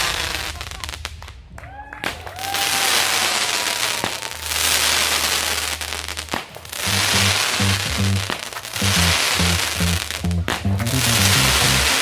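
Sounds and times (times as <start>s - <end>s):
fireworks crackling: 6.8s - 12.0s.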